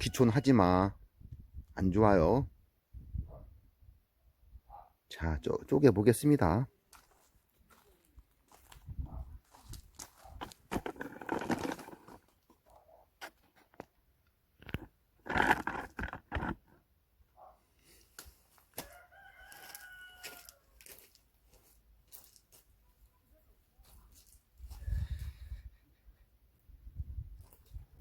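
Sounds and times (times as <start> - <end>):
rooster crowing: 0.0 - 0.5, 18.8 - 21.0
scraping bursts: 10.5 - 12.3, 15.2 - 16.7.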